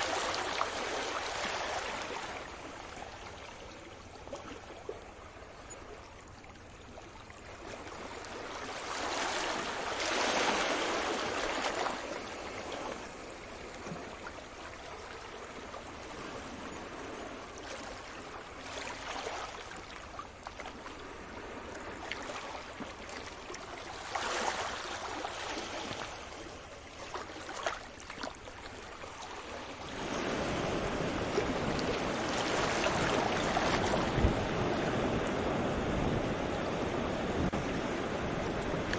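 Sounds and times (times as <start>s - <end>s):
sea waves washing in: 0.0s - 3.6s, 7.6s - 38.9s
surf roaring: 29.9s - 38.9s.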